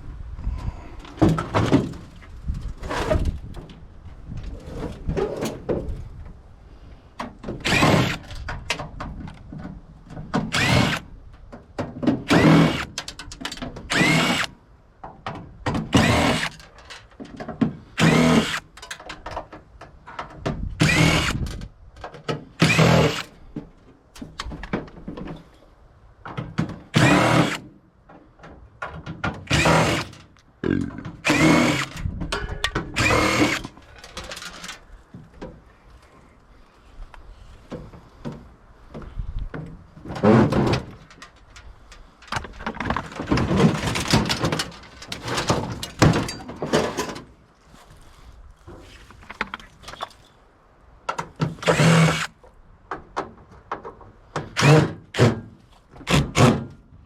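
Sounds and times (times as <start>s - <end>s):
power drill whining: 7.6s - 8.3s, 10.5s - 11.1s, 12.3s - 13.0s, 13.9s - 14.5s, 15.9s - 16.6s, 18.0s - 18.7s, 20.8s - 21.5s, 22.6s - 23.3s, 27.0s - 27.6s, 29.5s - 30.2s, 31.2s - 32.0s, 33.0s - 33.8s, 51.6s - 52.3s, 54.6s - 55.3s.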